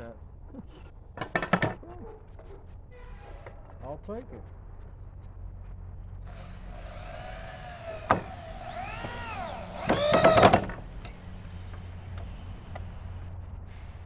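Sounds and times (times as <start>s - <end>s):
power drill whining: 6.3s - 11.4s.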